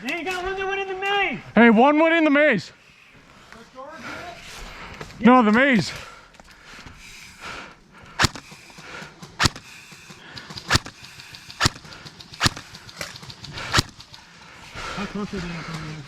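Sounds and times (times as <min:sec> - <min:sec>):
airsoft gun shots: 0:08.2 - 0:08.7, 0:09.4 - 0:12.8, 0:13.6 - 0:14.0.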